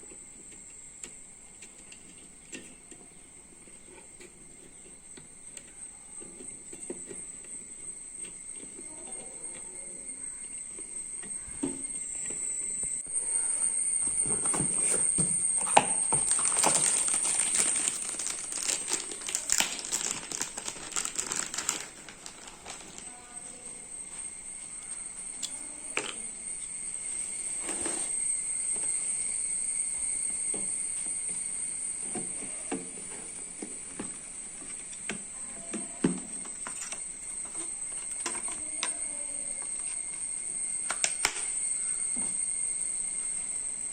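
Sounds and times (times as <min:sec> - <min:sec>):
steady high-pitched whine: 0:00.0 - 0:43.9
packaging crinkling: 0:14.5 - 0:23.3.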